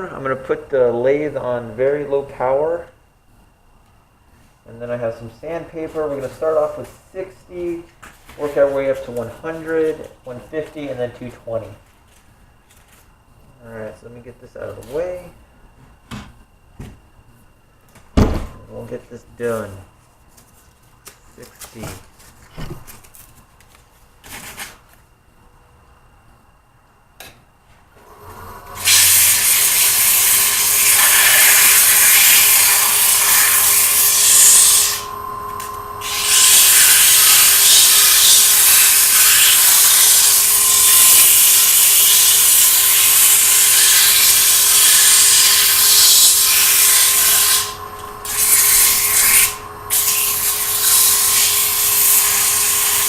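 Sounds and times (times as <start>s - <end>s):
lathe hum: 28.0s - 53.0s
sandpaper rasping on spinning wood: 28.8s - 35.1s, 36.0s - 53.0s.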